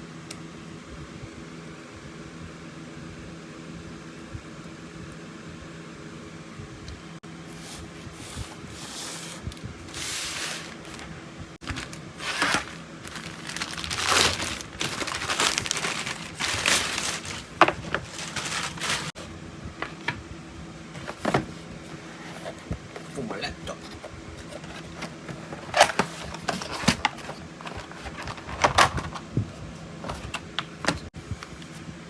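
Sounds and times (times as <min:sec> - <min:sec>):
electric fan humming: 0:00.0 - 0:32.0
plastic packaging crinkling: 0:09.9 - 0:19.2.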